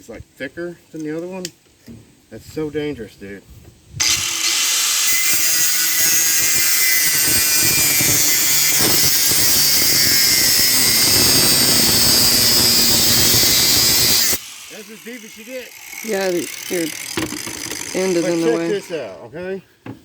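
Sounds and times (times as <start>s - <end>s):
angle grinder cutting metal: 4.0s - 19.2s.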